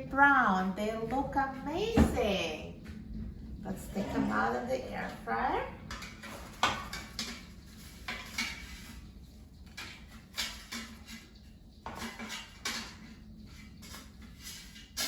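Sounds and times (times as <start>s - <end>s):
utensil clattering on metal basket: 5.9s - 9.0s, 9.6s - 15.0s.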